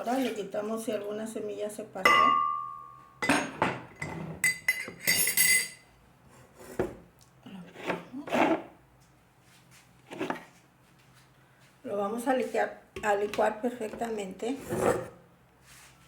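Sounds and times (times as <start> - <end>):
utensils clinking against glass: 2.2 - 5.8
scraping and handling noises: 9.4 - 11.3.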